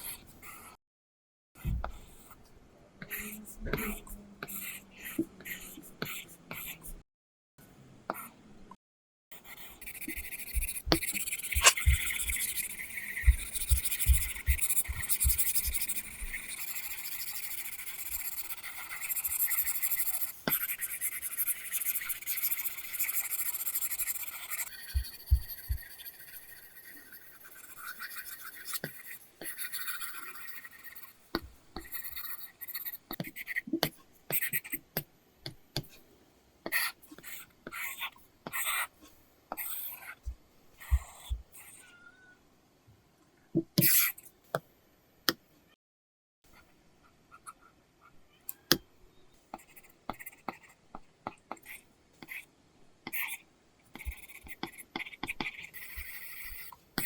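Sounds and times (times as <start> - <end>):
stylus scratching on screen: 9.3 - 31.2, 31.8 - 35.0, 53.1 - 57.0.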